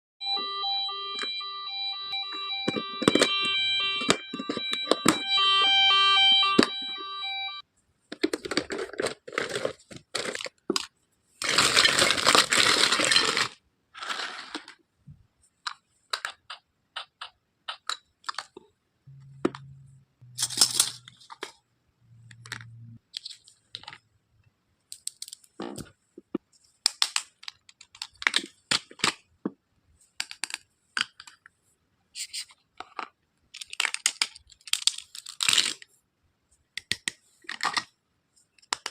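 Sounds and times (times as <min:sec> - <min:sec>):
electronic toy tones: 0:00.2 - 0:07.6
packaging tearing: 0:11.4 - 0:14.2
plastic pieces tapping: 0:15.6 - 0:18.7, 0:26.8 - 0:29.6, 0:30.2 - 0:31.4, 0:32.8 - 0:35.8, 0:38.6 - 0:38.9.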